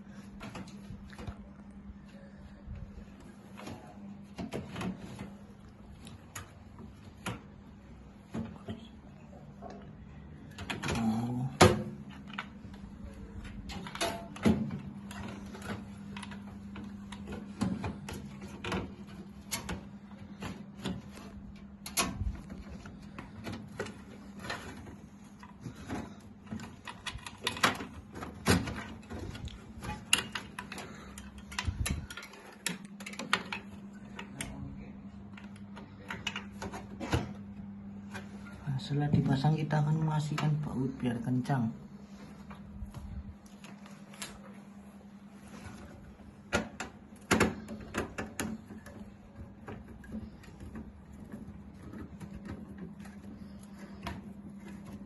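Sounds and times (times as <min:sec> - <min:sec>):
steady low hum: 0:00.0 - 0:55.0.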